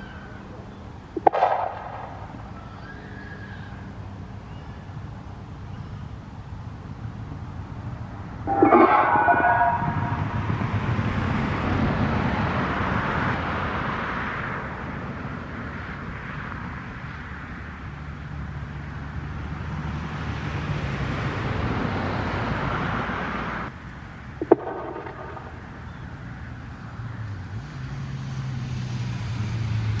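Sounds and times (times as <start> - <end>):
road traffic rumbling: 0.0 - 30.0
short pitched tone: 8.5 - 11.0, 24.4 - 25.6.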